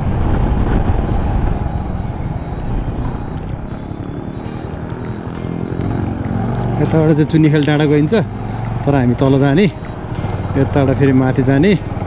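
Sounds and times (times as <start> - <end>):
wind rushing over microphone: 0.0 - 5.0
motorcycle engine running: 0.1 - 12.0.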